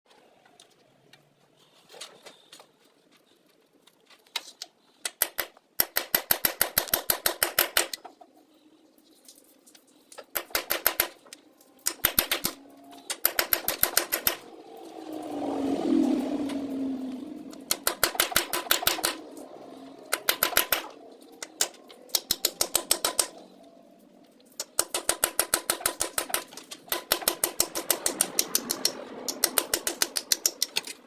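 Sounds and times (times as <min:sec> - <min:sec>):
rapid mechanical clicking: 0:05.0 - 0:08.1, 0:10.2 - 0:14.5, 0:17.5 - 0:19.2, 0:20.1 - 0:23.4, 0:24.5 - 0:31.0
rising whir: 0:12.4 - 0:24.4, 0:26.2 - 0:31.0.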